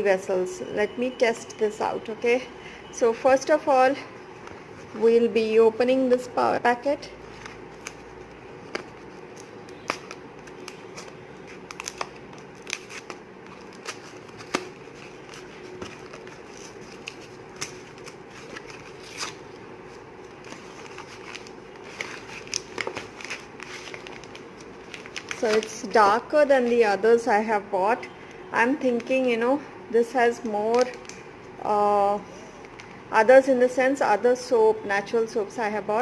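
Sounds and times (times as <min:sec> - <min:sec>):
packaging crinkling: 0:07.2 - 0:26.0.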